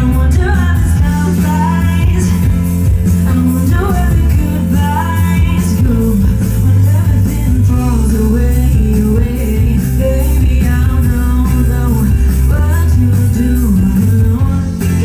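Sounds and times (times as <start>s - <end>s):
electric guitar: 0.0s - 15.0s
person singing: 0.0s - 15.0s
steady low bass: 0.0s - 15.0s.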